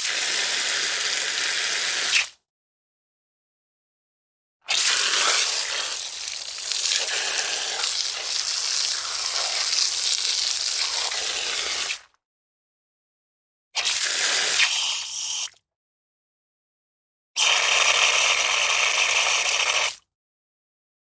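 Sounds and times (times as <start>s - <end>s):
water rushing from faucet: 0.0s - 2.2s, 4.7s - 12.0s, 17.4s - 20.0s.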